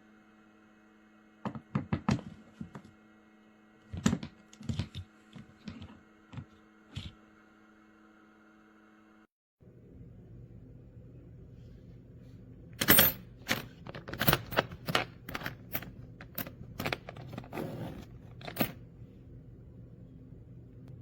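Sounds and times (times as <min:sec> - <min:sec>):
low electrical hum: 0:00.0 - 0:21.0.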